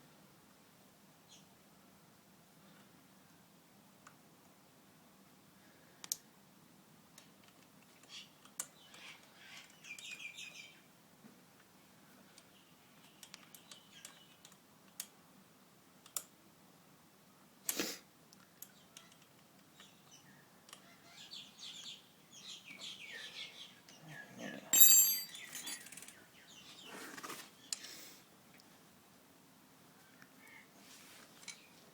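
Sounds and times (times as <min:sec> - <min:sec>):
metal parts clinking: 0:24.7 - 0:26.1
ringing metallic clatter: 0:24.7 - 0:26.1.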